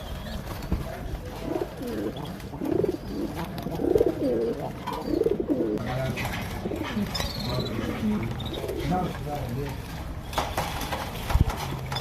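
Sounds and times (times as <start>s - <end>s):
pigeon cooing: 1.2s - 5.8s, 6.5s - 9.1s.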